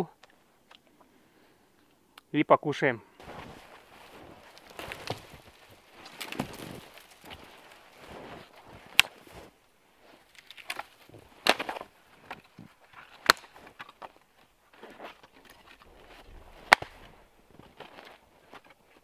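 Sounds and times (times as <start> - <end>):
dry wood cracking: 3.2 - 9.5, 10.1 - 19.0
small wood snaps and crunching: 4.4 - 7.9, 8.6 - 9.5, 10.2 - 19.0.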